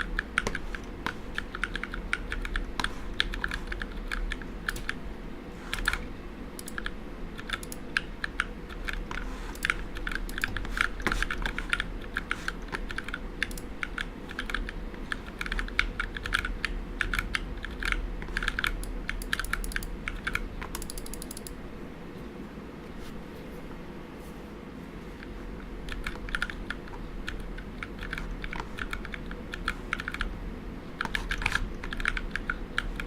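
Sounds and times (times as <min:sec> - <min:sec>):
mechanical keyboard typing: 0:00.0 - 0:05.0, 0:06.6 - 0:21.6, 0:25.9 - 0:30.3, 0:31.0 - 0:33.0.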